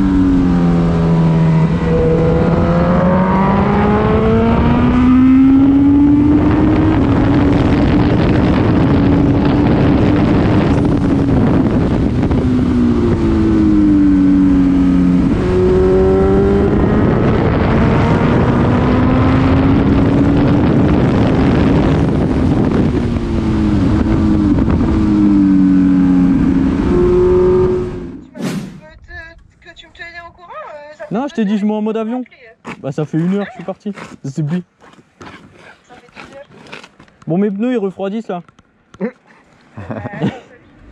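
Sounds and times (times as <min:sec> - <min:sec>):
motorcycle engine running: 0:00.0 - 0:28.3
wind noise: 0:00.0 - 0:30.5.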